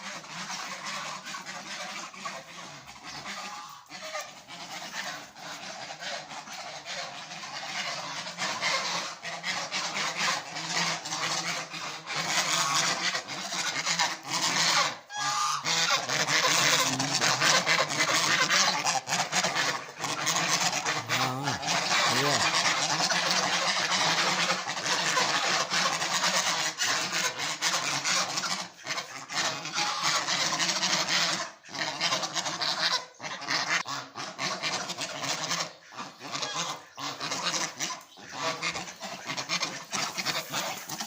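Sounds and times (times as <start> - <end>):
pet birds calling: 37.9 - 41.0.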